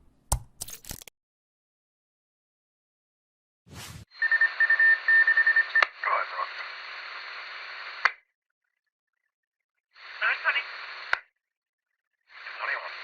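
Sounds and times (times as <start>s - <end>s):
radio static hiss: 5.6s - 8.2s, 10.0s - 11.3s, 12.3s - 13.0s
garbled radio voice: 6.0s - 6.6s, 10.0s - 11.1s, 12.3s - 13.0s
radio squelch click: 7.9s - 8.2s, 10.2s - 11.3s.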